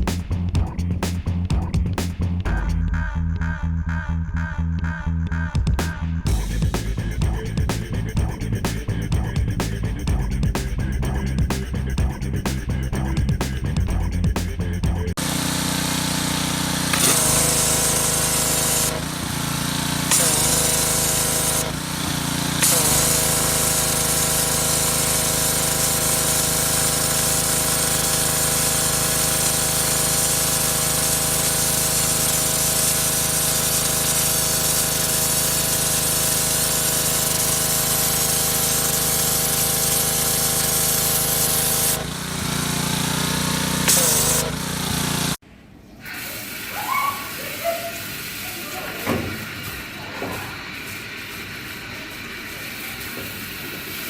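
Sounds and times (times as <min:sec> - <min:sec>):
pressure washer running: 0:06.3 - 0:12.6, 0:15.1 - 0:45.4, 0:47.3 - 0:54.0.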